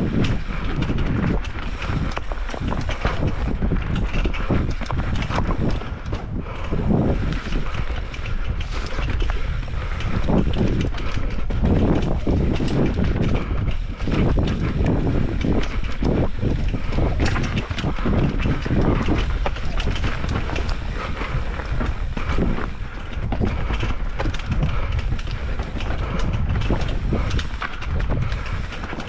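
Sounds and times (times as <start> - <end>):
bike knocks and rattles: 0.0 - 29.0
constant rumble: 0.0 - 29.0
wind rushing over microphone: 0.0 - 29.0.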